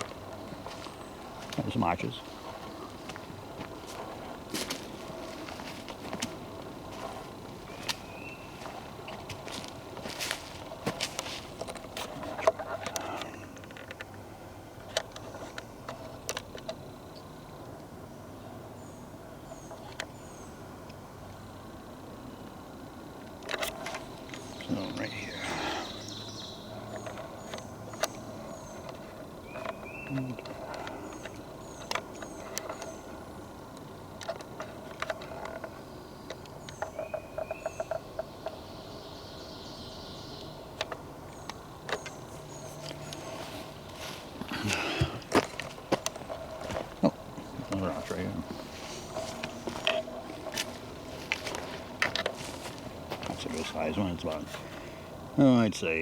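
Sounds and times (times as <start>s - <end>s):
footsteps crunching on dry leaves: 0.0s - 12.4s, 42.5s - 47.7s, 48.4s - 54.7s
small birds chirping: 0.0s - 56.0s
small bird chirping: 7.0s - 10.5s, 23.6s - 33.6s, 34.2s - 44.8s.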